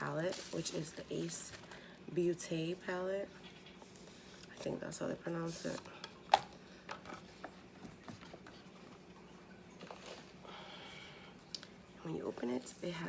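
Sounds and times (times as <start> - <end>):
soft rustling: 0.0 - 1.9.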